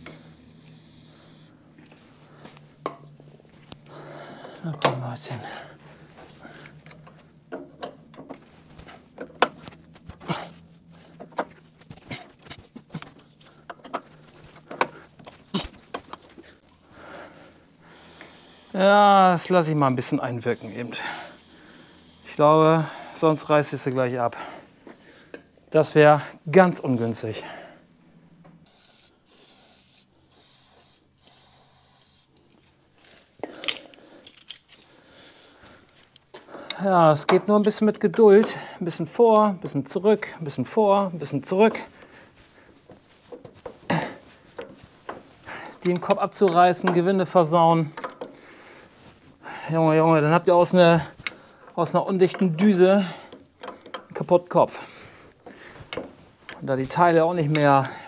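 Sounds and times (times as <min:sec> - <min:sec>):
aerosol can spraying: 0:28.7 - 0:32.4
tool clinking on metal: 0:47.9 - 0:48.4, 0:52.2 - 0:54.2
wrench metallic clicks and knocks: 0:47.9 - 0:48.4, 0:53.3 - 0:54.2.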